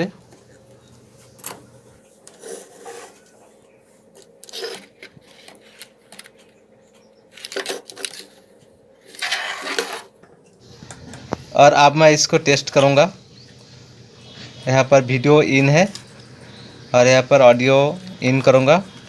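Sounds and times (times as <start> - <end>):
scraping rustle: 2.2 - 6.2, 9.0 - 10.2.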